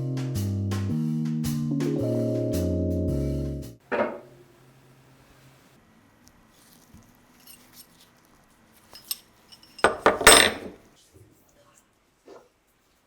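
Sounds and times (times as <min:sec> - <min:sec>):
metal parts clinking: 0:08.8 - 0:10.8.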